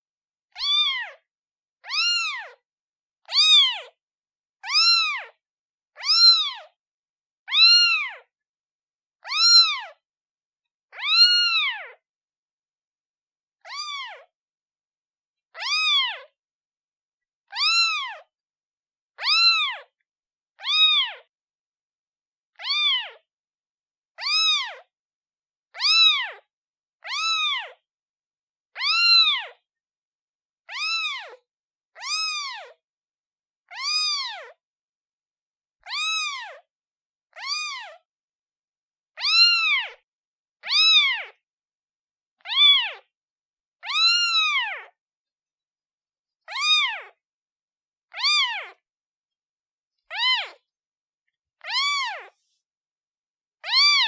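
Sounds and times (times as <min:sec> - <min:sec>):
kitten meowing: 0:00.5 - 0:01.2, 0:01.8 - 0:02.6, 0:03.2 - 0:04.0, 0:04.6 - 0:05.4, 0:06.0 - 0:06.8, 0:07.5 - 0:08.3, 0:09.2 - 0:10.0, 0:10.9 - 0:12.0, 0:13.6 - 0:14.3, 0:15.6 - 0:16.4, 0:17.5 - 0:18.3, 0:19.2 - 0:19.9, 0:20.6 - 0:21.3, 0:22.6 - 0:23.2, 0:24.2 - 0:24.9, 0:25.7 - 0:27.8, 0:28.8 - 0:29.6, 0:30.7 - 0:31.4, 0:32.0 - 0:32.8, 0:33.7 - 0:34.6, 0:35.8 - 0:36.7, 0:37.3 - 0:38.0, 0:39.2 - 0:40.0, 0:40.6 - 0:41.4, 0:42.4 - 0:43.1, 0:43.8 - 0:45.0, 0:46.4 - 0:47.2, 0:48.1 - 0:48.8, 0:50.0 - 0:50.7, 0:51.6 - 0:52.6, 0:53.6 - 0:54.0.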